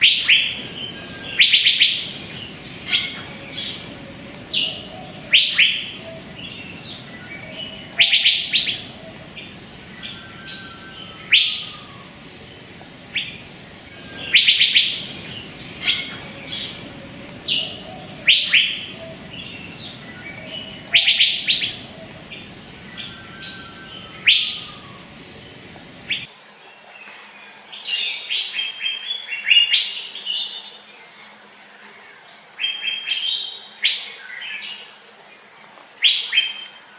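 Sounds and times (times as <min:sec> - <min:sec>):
bird whistled calls: 0:00.0 - 0:03.8, 0:04.5 - 0:12.2, 0:13.1 - 0:16.8, 0:17.4 - 0:22.2, 0:22.8 - 0:25.2.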